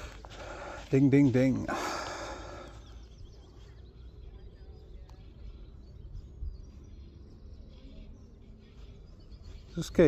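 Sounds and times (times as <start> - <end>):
small birds chirping: 0.0 - 10.0.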